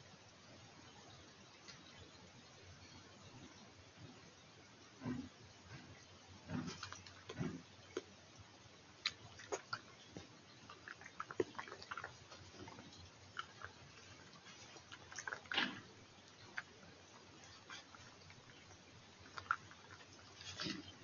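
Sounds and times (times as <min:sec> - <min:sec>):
crackles in vegetation: 0:05.1 - 0:21.0
badger snuffling and sniffing: 0:09.3 - 0:21.0.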